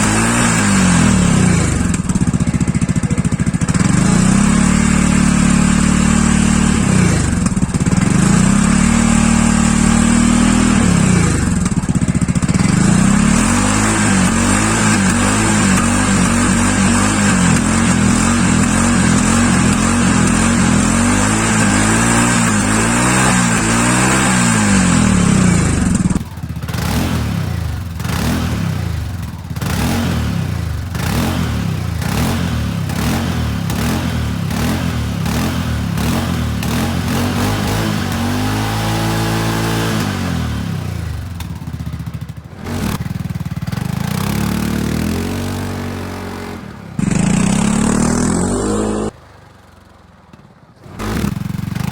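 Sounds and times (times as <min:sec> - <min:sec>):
atv engine revving: 0:00.0 - 0:51.9.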